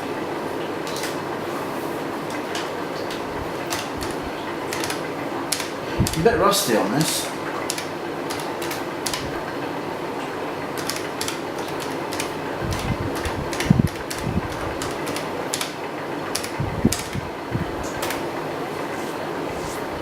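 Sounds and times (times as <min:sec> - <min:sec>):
steady background hum: 0:00.0 - 0:20.0
keyboard keys clicking: 0:02.3 - 0:06.4, 0:07.6 - 0:09.5, 0:10.7 - 0:18.3.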